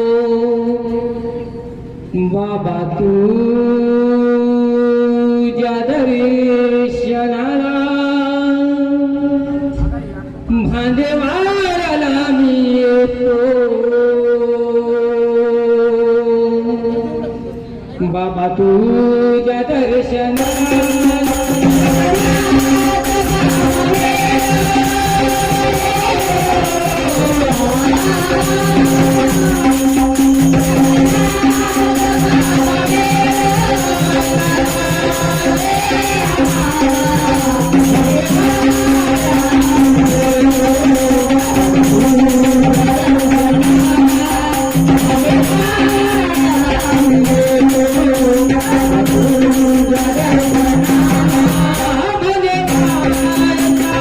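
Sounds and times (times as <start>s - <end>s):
dholki drumming: 20.4s - 54.0s
jingling hand percussion: 20.4s - 54.0s.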